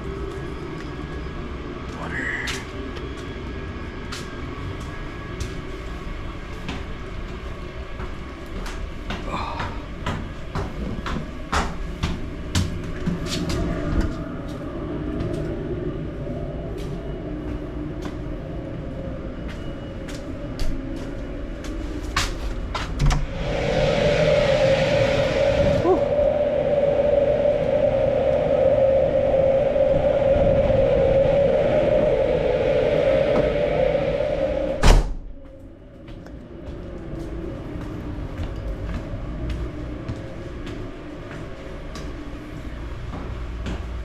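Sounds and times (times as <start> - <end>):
steady droning tone: 0.0 - 44.0.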